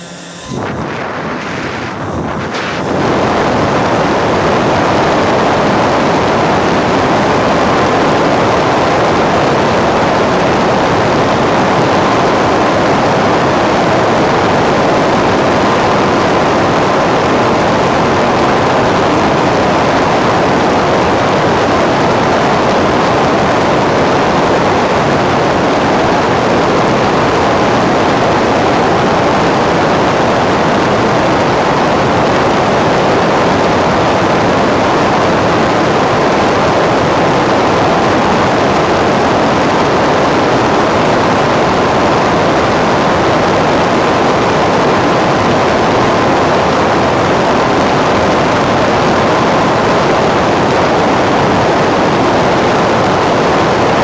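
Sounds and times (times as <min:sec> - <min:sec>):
loud steady rushing noise: 0:00.0 - 0:17.0
faint steady whine: 0:00.0 - 0:54.0.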